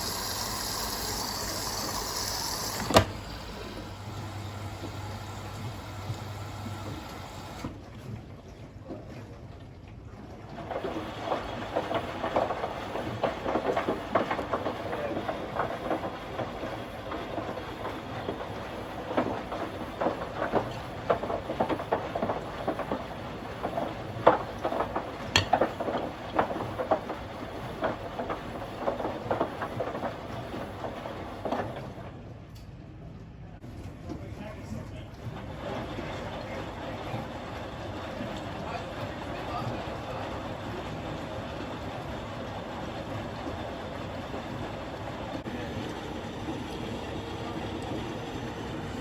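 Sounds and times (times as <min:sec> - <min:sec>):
washing machine drum turning: 0:00.0 - 0:07.8, 0:10.6 - 0:32.1.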